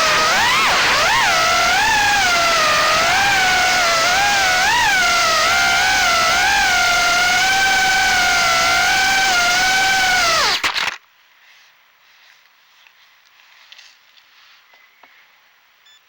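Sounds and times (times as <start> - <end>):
drone motors whining: 0.0 - 11.0.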